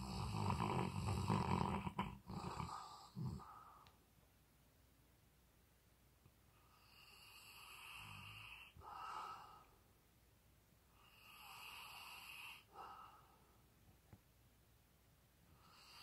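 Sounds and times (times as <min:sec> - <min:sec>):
dog snoring: 0:00.0 - 0:03.8, 0:06.6 - 0:09.4, 0:11.0 - 0:13.2, 0:15.6 - 0:16.0.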